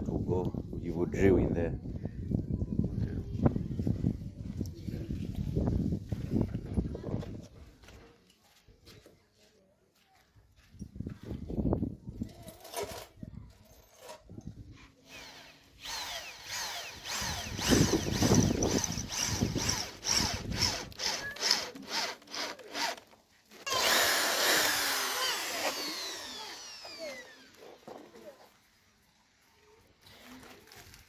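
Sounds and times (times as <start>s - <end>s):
power drill whining: 15.0s - 28.1s.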